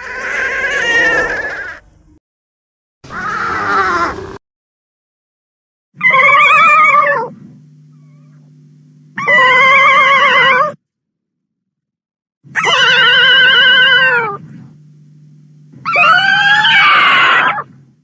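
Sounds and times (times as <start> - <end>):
monster roar sound effect: 3.1 - 4.4
low steady hum: 6.1 - 10.8, 12.6 - 18.0.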